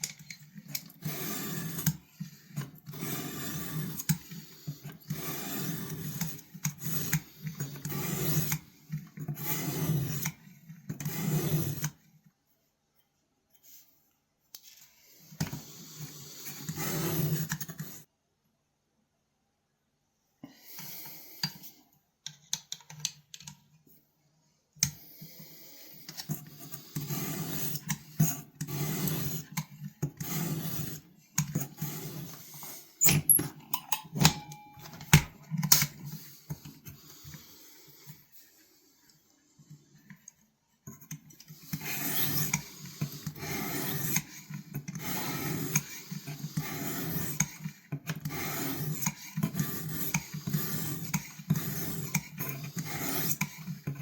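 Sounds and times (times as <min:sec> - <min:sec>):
scraping strokes on knife blade: 0:41.6 - 0:47.7, 0:48.3 - 0:53.9.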